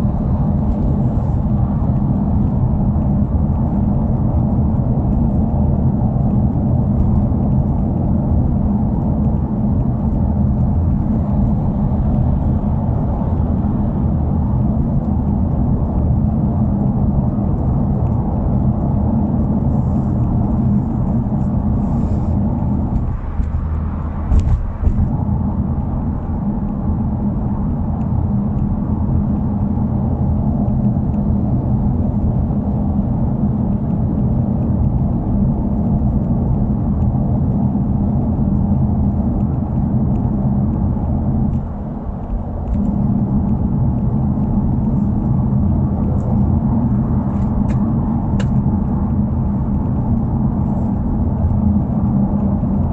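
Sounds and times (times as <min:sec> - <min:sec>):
car engine and exhaust drone: 0:00.0 - 0:52.9
single thump: 0:24.3 - 0:25.1.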